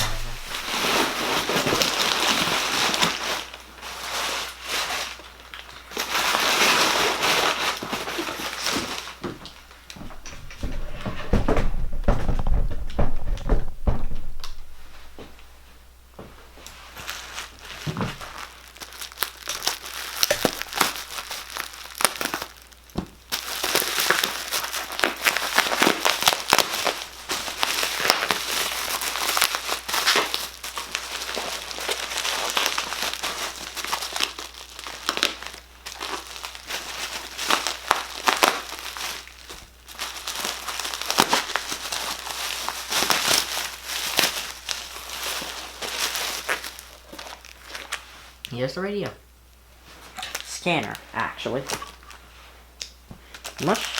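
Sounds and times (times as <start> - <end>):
packaging crinkling and rustling: 0.0 - 15.8, 16.5 - 48.5, 49.8 - 53.9
dull knocks of handling: 10.0 - 15.5.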